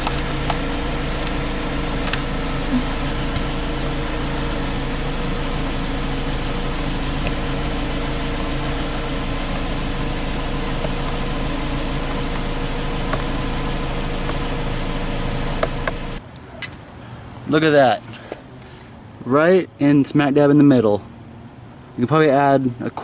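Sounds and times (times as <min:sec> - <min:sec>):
car engine idling: 0:00.0 - 0:17.4.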